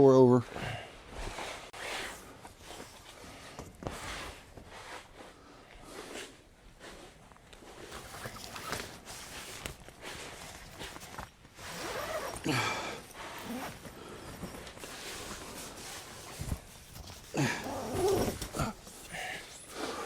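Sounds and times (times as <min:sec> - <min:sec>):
broom sweeping floor: 0:01.1 - 0:08.1.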